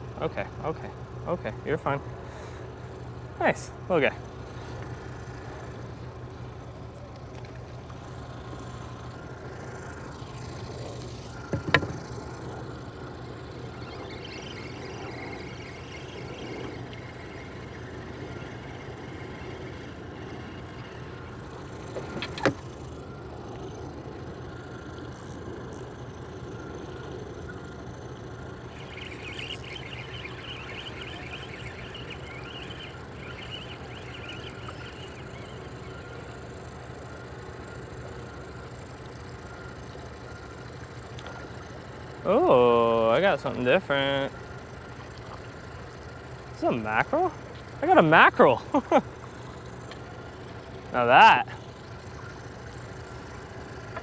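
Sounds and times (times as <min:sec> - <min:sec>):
low motor hum: 0:00.0 - 0:54.0
sharp knocks: 0:11.5 - 0:12.1.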